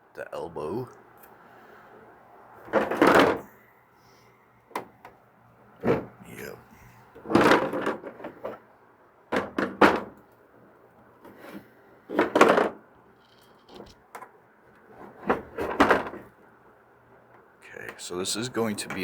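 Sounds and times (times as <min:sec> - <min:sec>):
plastic parts knocking and rubbing: 0:02.6 - 0:03.5, 0:07.2 - 0:08.7, 0:09.3 - 0:10.2, 0:12.1 - 0:16.3.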